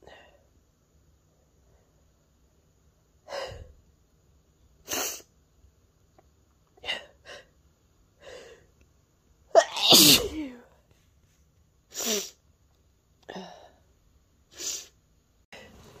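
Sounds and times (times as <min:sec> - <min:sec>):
person sneezing: 0:09.6 - 0:10.7.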